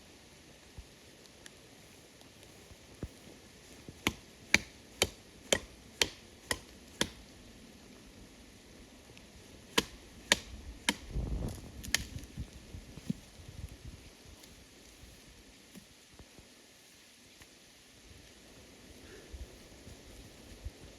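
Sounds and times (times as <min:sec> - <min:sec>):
hand tool striking wood: 0:03.9 - 0:07.2, 0:09.7 - 0:11.1.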